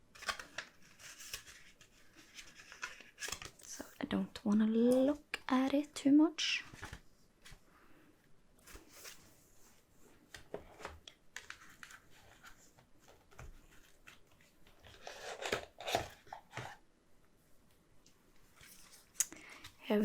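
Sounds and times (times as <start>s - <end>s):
cardboard and paper rustling: 0.1s - 4.0s, 6.4s - 7.6s, 8.6s - 16.8s.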